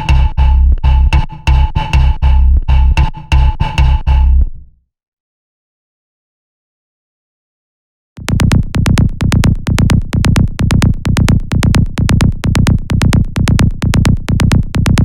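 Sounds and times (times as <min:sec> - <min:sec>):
drum machine clicks: 0:00.0 - 0:04.4, 0:08.2 - 0:15.0
deep synth bass pulsing: 0:00.0 - 0:04.6, 0:08.2 - 0:15.0.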